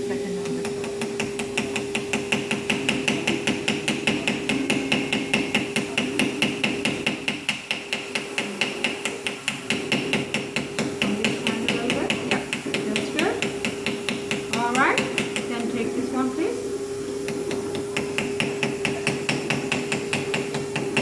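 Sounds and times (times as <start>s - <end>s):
small hammer tapping on metal: 17.3s - 21.0s.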